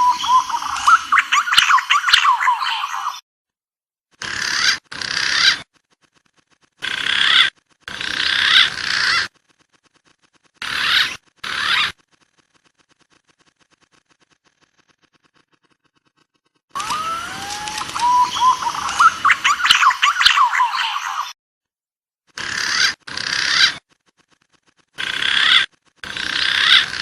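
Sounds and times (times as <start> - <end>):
recorded pigeon and dove calls: 0.0 - 3.2, 16.8 - 21.3
short wavering whistled calls: 0.0 - 3.2, 16.8 - 21.4.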